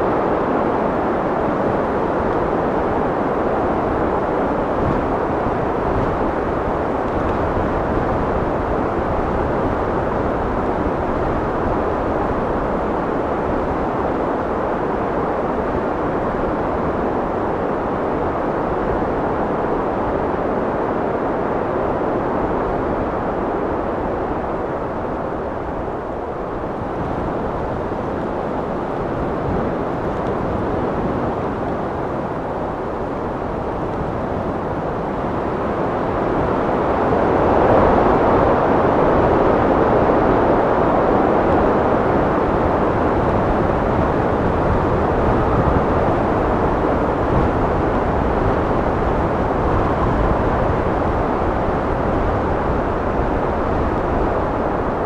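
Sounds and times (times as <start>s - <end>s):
wind blowing: 22.5s - 55.0s.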